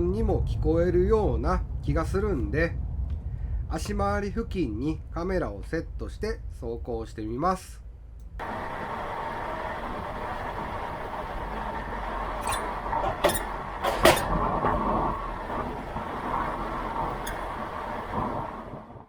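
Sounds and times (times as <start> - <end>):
road and tyre noise: 0.0 - 6.0, 7.9 - 19.0
wheel knocking over bumps: 10.0 - 18.7
faint suspension squeaking: 11.4 - 14.4, 16.2 - 18.1.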